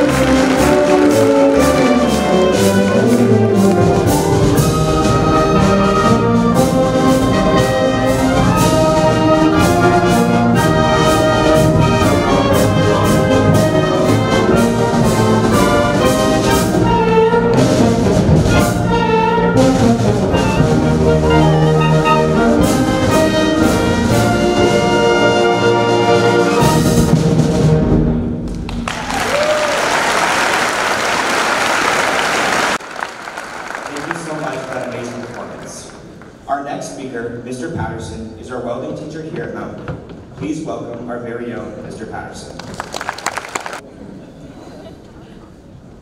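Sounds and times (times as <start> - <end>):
drum strokes: 0.0 - 28.6
brass band music: 0.0 - 36.4.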